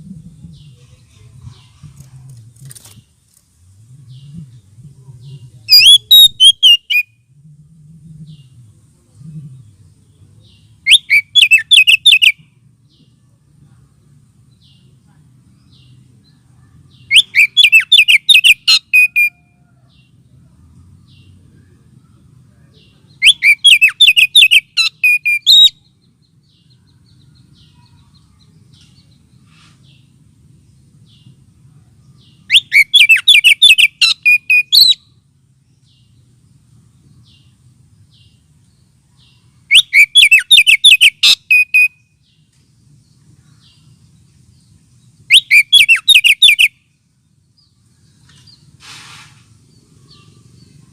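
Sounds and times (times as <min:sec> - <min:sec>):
faint low hum: 0:00.0 - 0:10.9, 0:12.3 - 0:17.2, 0:25.7 - 0:32.7
bird call sharp repeated notes: 0:32.5 - 0:35.0, 0:39.7 - 0:42.0, 0:45.3 - 0:46.7.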